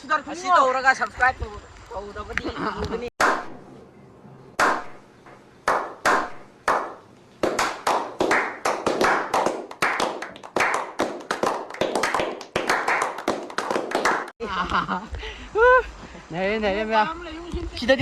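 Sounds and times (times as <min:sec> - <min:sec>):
sharp slaps: 0:03.2 - 0:03.6, 0:04.6 - 0:14.3.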